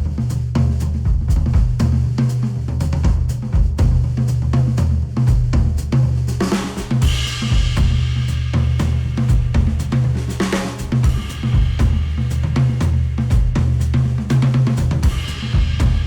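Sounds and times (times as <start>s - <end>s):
drum kit beat: 0.0s - 16.0s
heavy bass: 0.0s - 16.0s
cymbal washes: 6.4s - 16.0s.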